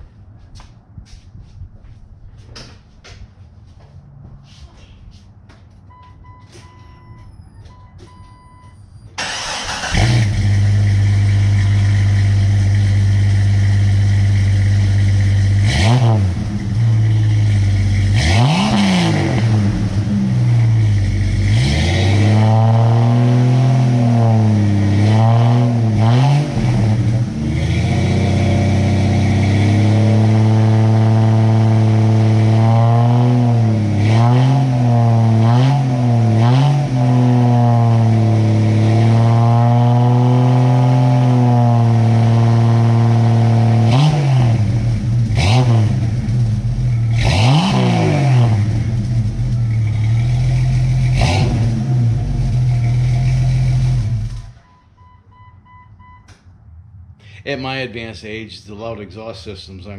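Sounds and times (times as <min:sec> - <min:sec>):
car engine revving through exhaust: 0:09.2 - 0:54.6.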